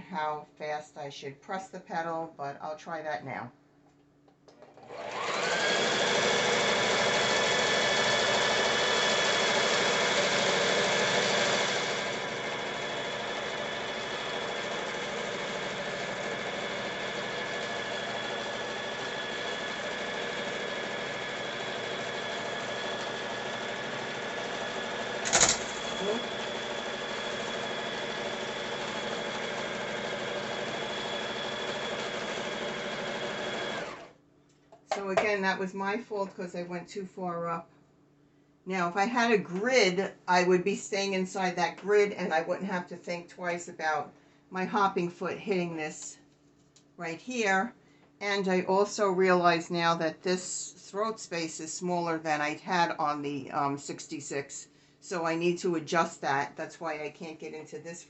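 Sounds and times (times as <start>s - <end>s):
sewing machine running: 4.6s - 34.1s.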